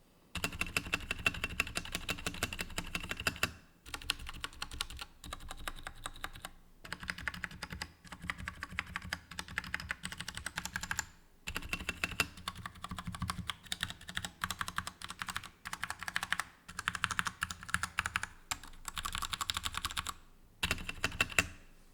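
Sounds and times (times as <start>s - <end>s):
mechanical keyboard typing: 0.4s - 21.6s.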